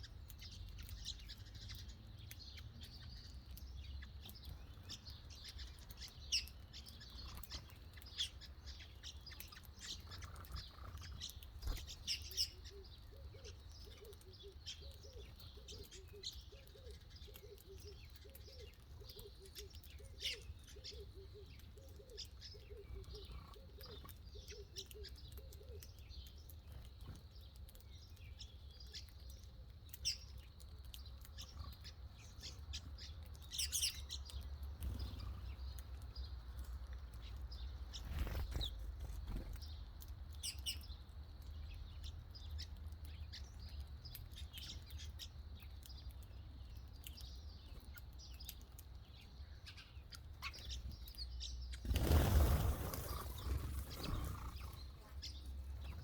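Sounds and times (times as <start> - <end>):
small birds chirping: 0.0 - 56.0.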